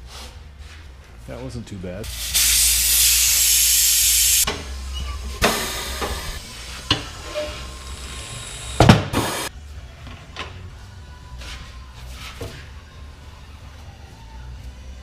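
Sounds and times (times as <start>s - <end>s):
compressed air hissing: 2.0s - 4.5s, 5.4s - 9.5s.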